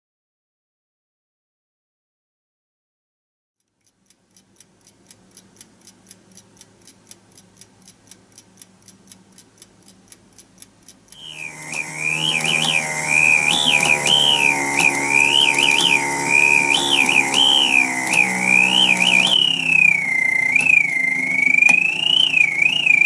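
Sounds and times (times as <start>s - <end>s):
alarm clock ticking: 3.6s - 23.0s
warbling bird alarm whistle: 11.2s - 23.0s.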